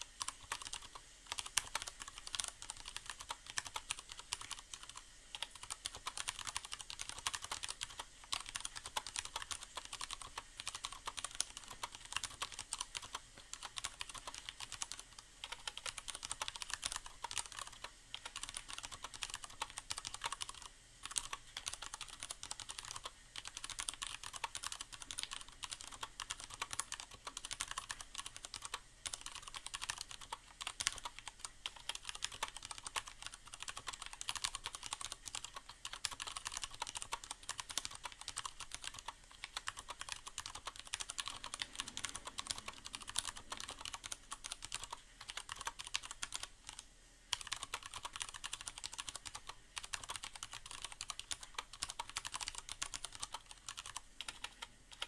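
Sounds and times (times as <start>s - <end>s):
mechanical keyboard typing: 0.0s - 55.0s.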